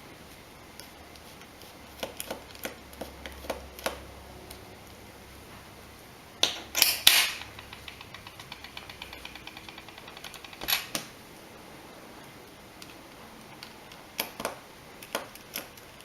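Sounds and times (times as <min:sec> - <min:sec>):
tools clicking on plastic frame: 0:06.4 - 0:11.1
fast light ticks: 0:07.4 - 0:11.1.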